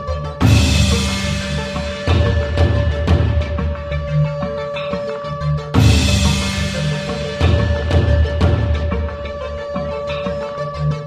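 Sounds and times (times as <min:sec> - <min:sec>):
heavy drum hits: 0:00.4 - 0:04.1.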